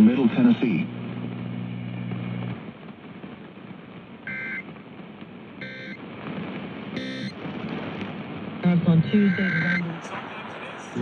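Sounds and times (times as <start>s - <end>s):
low steady hum: 0.0s - 11.0s
two-tone digital data warbles: 7.0s - 7.4s, 9.2s - 9.8s.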